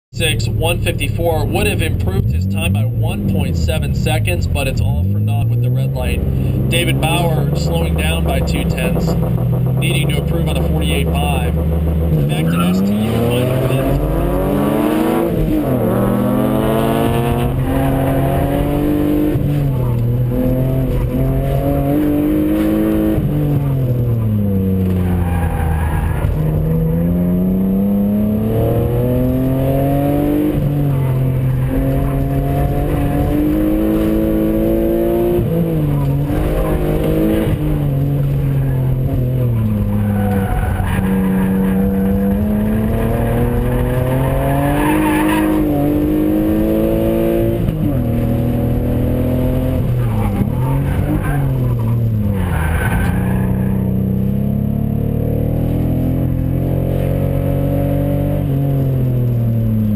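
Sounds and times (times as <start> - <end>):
car engine revving: 0.1 - 59.9
tyres squealing: 39.5 - 45.7.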